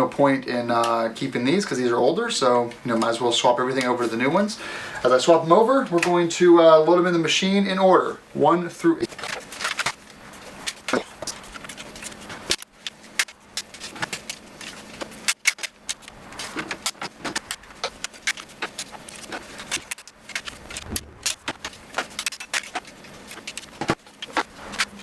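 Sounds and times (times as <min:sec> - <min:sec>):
faint hum: 0:14.2 - 0:25.0.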